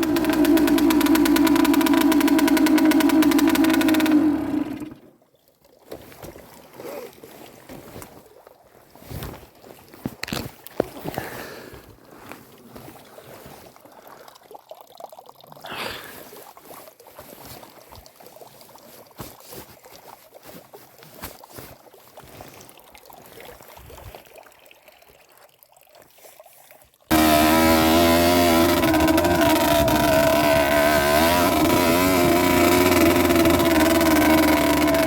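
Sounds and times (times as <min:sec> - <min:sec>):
two-stroke engine running: 0:00.0 - 0:05.1, 0:27.1 - 0:35.0
faint crackling and trickling: 0:05.4 - 0:27.1.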